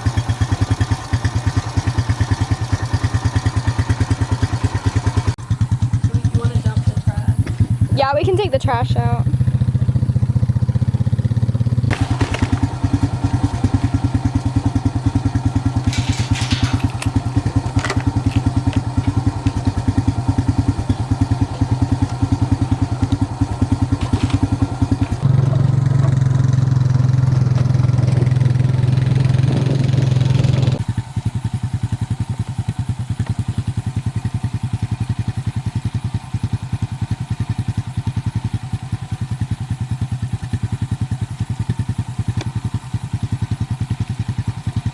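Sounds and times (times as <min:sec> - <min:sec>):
engine running: 0:00.0 - 0:44.9
clattering: 0:11.9 - 0:25.2.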